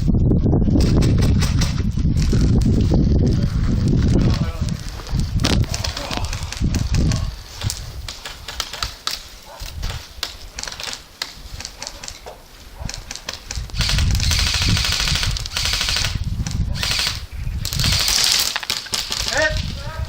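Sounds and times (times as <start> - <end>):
airsoft guns firing: 0.8 - 1.9, 7.6 - 11.4, 13.1 - 19.8.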